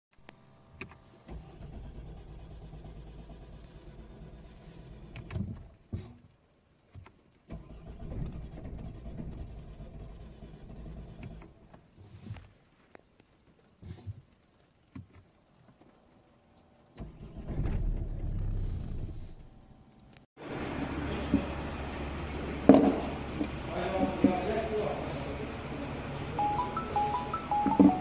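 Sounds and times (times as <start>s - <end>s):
car engine starting and stalling: 0.6s - 6.1s, 7.4s - 12.0s, 16.8s - 28.0s.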